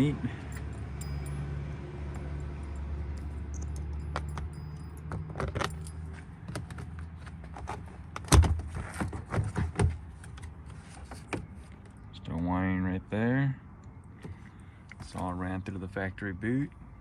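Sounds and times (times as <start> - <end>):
clicks and jangling rattles: 0.4 - 6.8.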